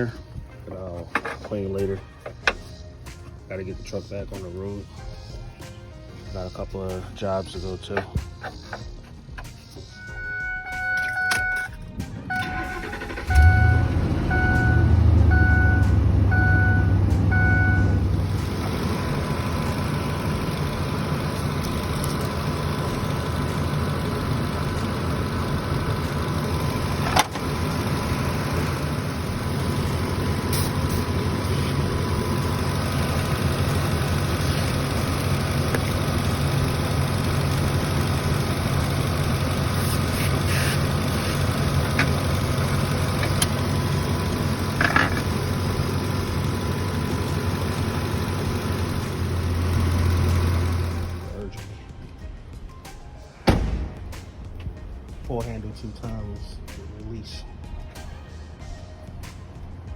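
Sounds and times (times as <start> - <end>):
truck engine idling: 0.0 - 51.6
dashboard warning chime: 9.9 - 18.2.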